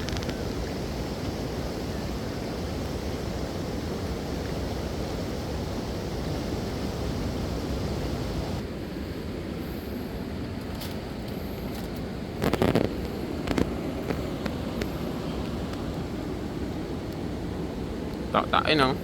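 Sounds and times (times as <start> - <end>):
waterfall roaring: 0.0 - 8.6.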